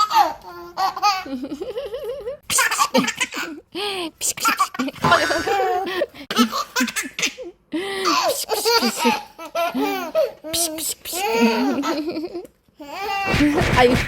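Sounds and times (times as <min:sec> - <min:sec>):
baby laughing: 0:00.0 - 0:13.9.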